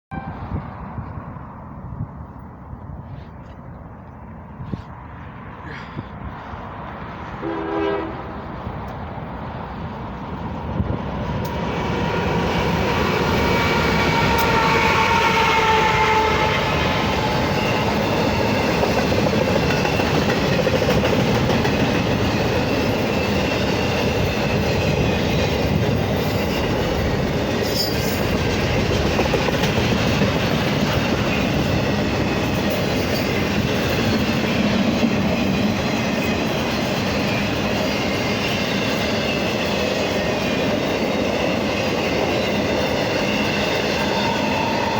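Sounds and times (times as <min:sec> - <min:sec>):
locomotive horn chord: 0:00.1 - 0:00.5, 0:07.4 - 0:08.4
freight cars rolling on rails: 0:08.4 - 0:44.9.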